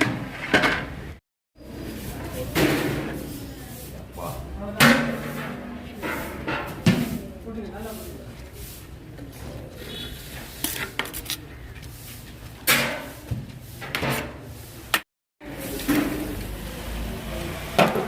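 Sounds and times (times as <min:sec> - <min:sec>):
metal pots clanking and scraping: 0:00.0 - 0:01.2, 0:04.8 - 0:07.3, 0:10.2 - 0:14.5.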